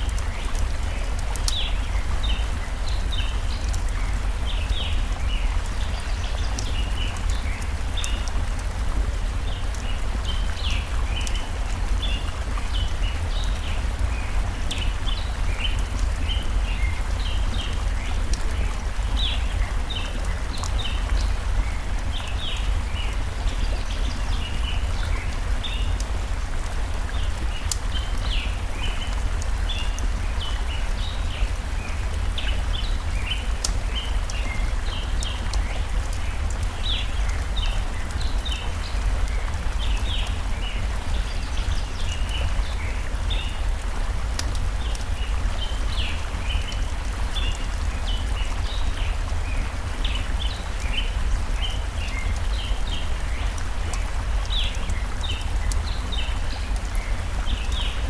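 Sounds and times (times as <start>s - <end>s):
wood fire crackling: 0.0s - 2.0s, 24.7s - 30.9s, 32.0s - 40.3s, 42.0s - 46.9s
small birds chirping: 0.0s - 58.0s
stream water flowing: 0.0s - 58.0s.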